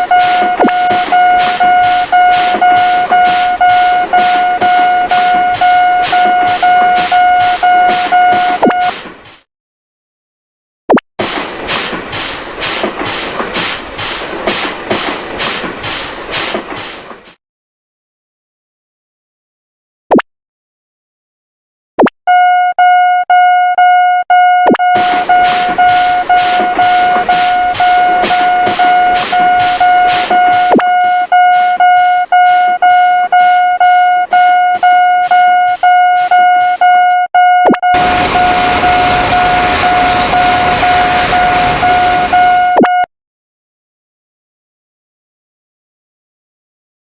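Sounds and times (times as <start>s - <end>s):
passing train rushing: 0.0s - 8.6s, 11.2s - 17.2s, 25.0s - 33.9s, 38.0s - 42.6s
crossing warning bell ringing: 0.0s - 8.9s, 24.8s - 42.8s
train wheels clattering: 11.2s - 17.3s, 25.0s - 30.7s.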